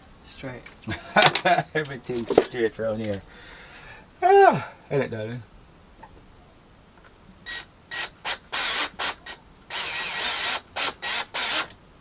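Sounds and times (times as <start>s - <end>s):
power drill bursts: 7.4s - 11.8s.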